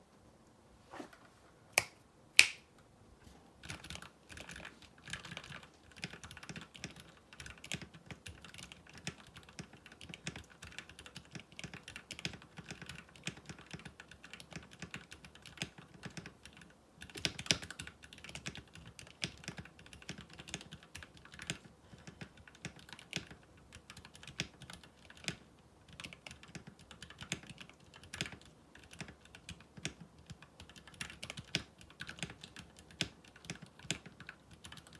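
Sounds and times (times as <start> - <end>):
sharp clicks: 1.8 - 2.7
mechanical keyboard typing: 3.6 - 34.9.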